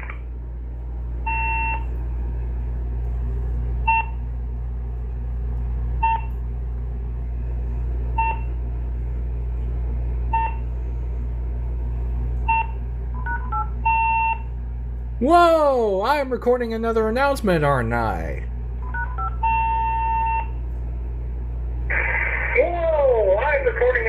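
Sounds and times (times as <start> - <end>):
steady low hum: 0.0 - 24.0
answering machine beeps: 1.3 - 1.9, 3.8 - 4.2, 6.0 - 6.3, 8.2 - 8.5, 12.4 - 14.5, 18.8 - 20.6
answering machine tone: 12.4 - 14.6, 18.8 - 20.6.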